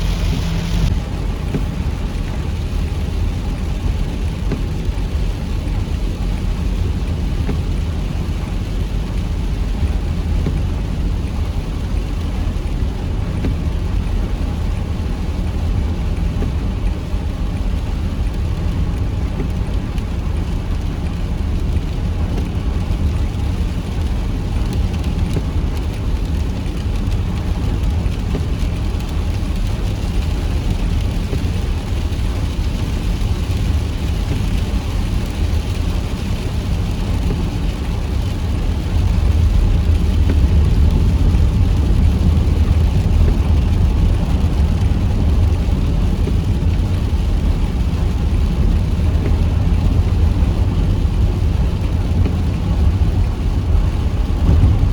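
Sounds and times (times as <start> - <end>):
low rumble: 0.0 - 4.4, 33.2 - 54.9
heavy rain falling: 0.0 - 54.9.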